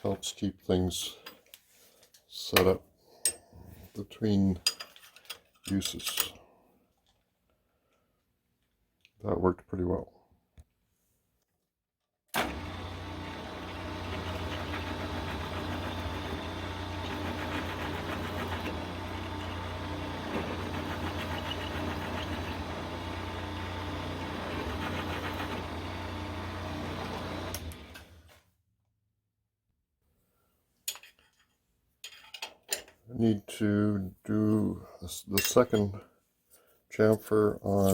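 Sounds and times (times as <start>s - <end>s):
milling machine running: 12.4s - 28.2s.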